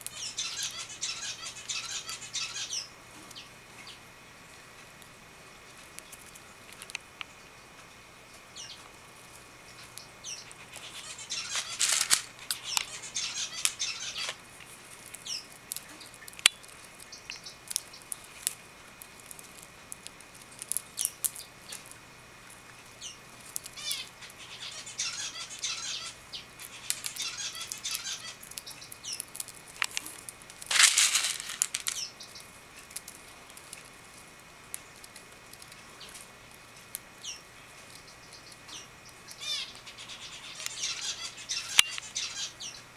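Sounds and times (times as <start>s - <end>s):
bird chirps: 0.1s - 4.0s, 10.0s - 14.4s, 23.8s - 29.2s, 38.0s - 42.9s
bird cracking seed shells: 6.0s - 7.1s, 9.8s - 22.0s, 23.4s - 24.4s, 26.6s - 37.1s, 40.4s - 42.2s
wings rustling and fluttering: 8.8s - 37.0s.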